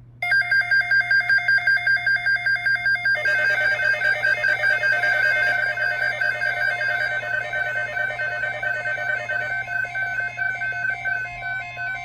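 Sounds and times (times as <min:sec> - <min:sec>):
rapid electronic beeping: 0:00.2 - 0:12.0.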